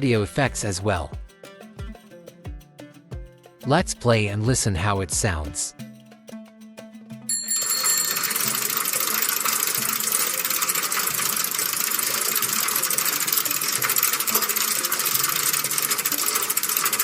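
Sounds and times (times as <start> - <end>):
rapid mechanical clattering: 7.4 - 17.0.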